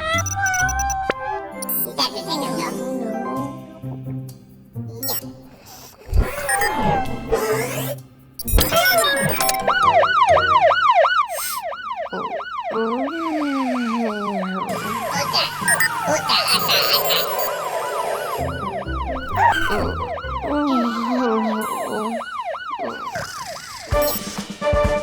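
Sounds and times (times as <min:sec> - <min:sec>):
cartoon fire truck siren: 0:00.0 - 0:02.2, 0:08.4 - 0:24.4
gliding tones: 0:12.7 - 0:22.5.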